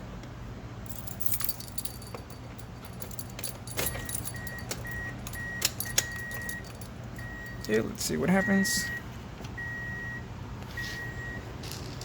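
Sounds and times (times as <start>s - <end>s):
car keys jangling: 0.9s - 8.0s
car warning chime beeping: 4.2s - 11.5s.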